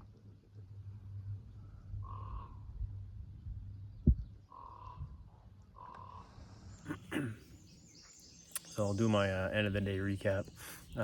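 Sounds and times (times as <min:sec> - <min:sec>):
crow cawing: 0:02.0 - 0:02.6, 0:04.5 - 0:05.1, 0:05.8 - 0:06.3.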